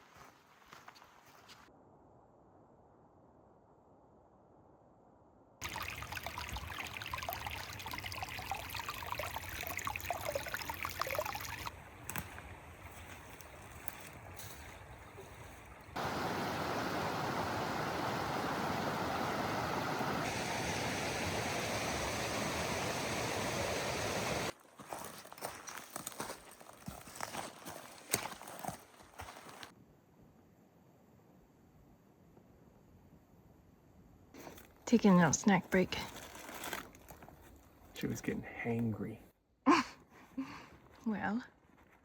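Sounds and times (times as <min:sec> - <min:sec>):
steady rushing outdoor noise: 0:15.4 - 0:24.6.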